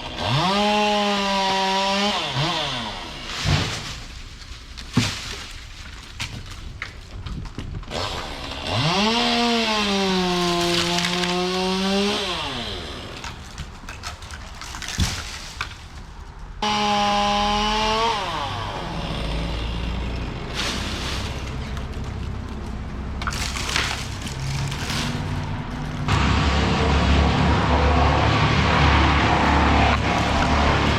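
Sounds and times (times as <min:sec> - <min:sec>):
chainsaw revving and cutting: 0:00.0 - 0:04.0, 0:07.9 - 0:15.5, 0:16.6 - 0:22.3, 0:23.2 - 0:30.9
low engine drone: 0:25.2 - 0:30.9.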